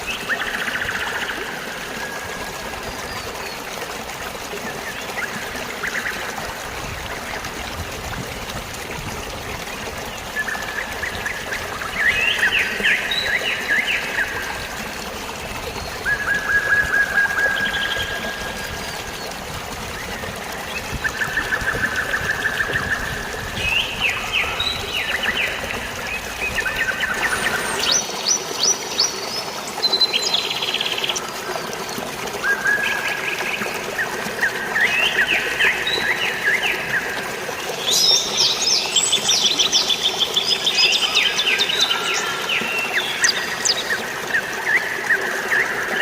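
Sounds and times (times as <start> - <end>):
flowing water: 0.0 - 46.0
songbirds chirping and trilling: 9.7 - 46.0.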